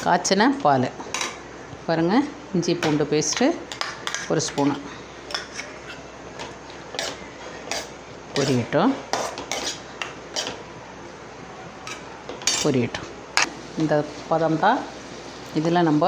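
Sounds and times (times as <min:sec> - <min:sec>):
metal spoon scraping a pan: 0:03.3 - 0:10.6, 0:11.8 - 0:13.5
onions frying in oil: 0:11.8 - 0:16.0.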